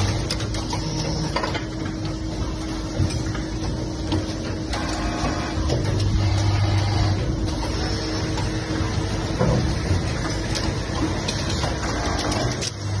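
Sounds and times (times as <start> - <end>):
machine clicks and knocks: 0.0 - 13.0
machine humming: 0.0 - 13.0.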